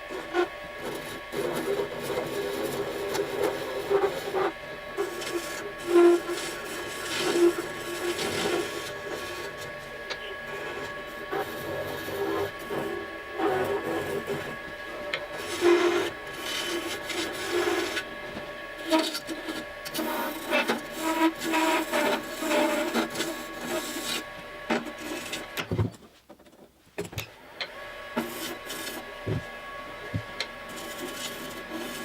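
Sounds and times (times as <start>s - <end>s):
wood lathe whine: 0.0s - 26.0s, 27.4s - 32.0s
turning tool scraping wood: 0.0s - 26.7s, 28.1s - 32.0s.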